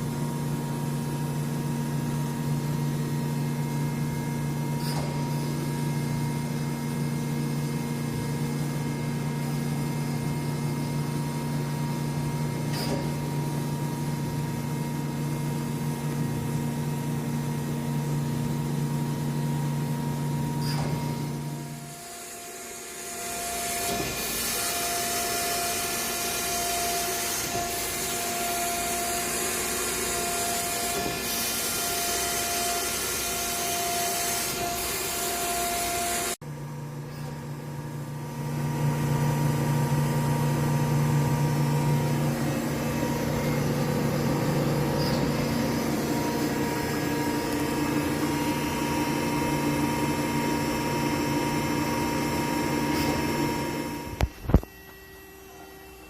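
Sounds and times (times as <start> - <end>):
steady motor hum: 0.0 - 56.0
deeper machine hum: 35.5 - 55.9.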